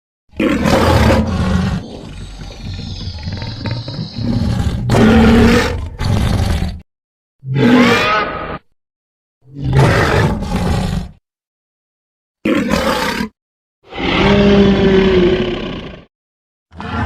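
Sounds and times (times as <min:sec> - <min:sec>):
deep growling monster roars: 0:00.4 - 0:06.8, 0:13.9 - 0:16.1, 0:16.7 - 0:17.0.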